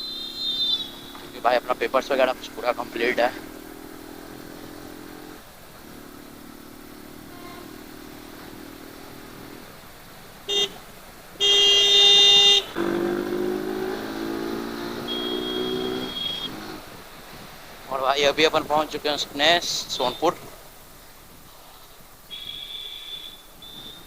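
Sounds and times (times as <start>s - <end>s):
vehicle horns: 0.0s - 1.6s, 7.2s - 7.9s, 10.5s - 16.8s, 19.8s - 20.4s, 22.3s - 24.0s
traffic hum: 0.0s - 24.0s.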